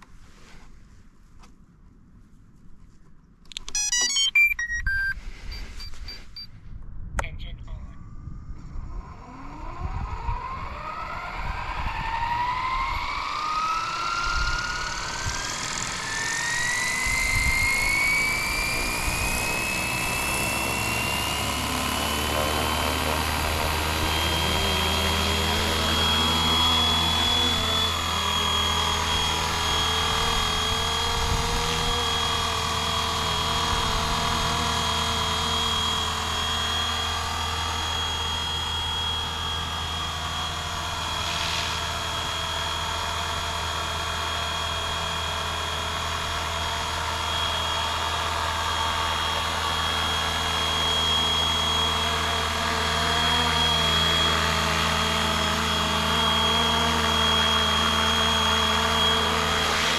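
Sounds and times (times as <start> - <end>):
electric motor whine: 8.6 - 59.9
helicopter rotor noise: 8.6 - 59.9.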